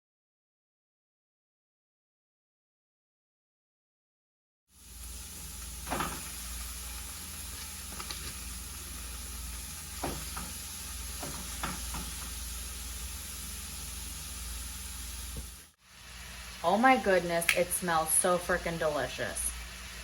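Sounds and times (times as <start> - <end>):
meat sizzling in a pan: 4.7 - 20.0.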